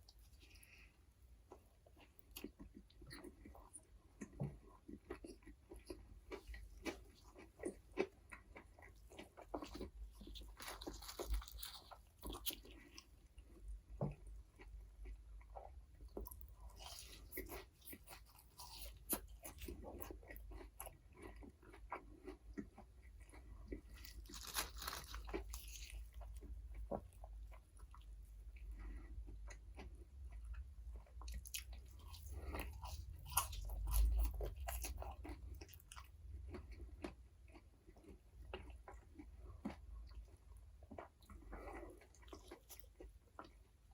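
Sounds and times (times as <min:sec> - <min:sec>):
moist chewing: 0:01.5 - 0:43.7
crunching bites: 0:09.6 - 0:12.7, 0:24.0 - 0:26.0.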